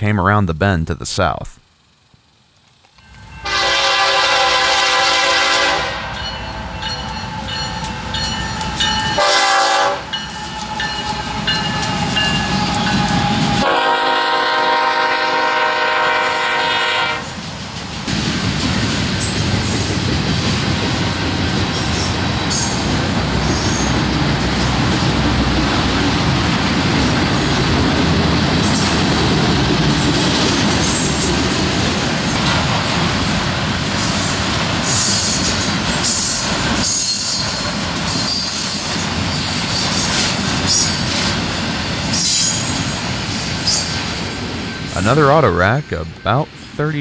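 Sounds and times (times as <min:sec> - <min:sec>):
train wheels rumbling on rail: 0:02.9 - 0:47.0
train horn blasts: 0:03.3 - 0:06.2, 0:08.7 - 0:17.4.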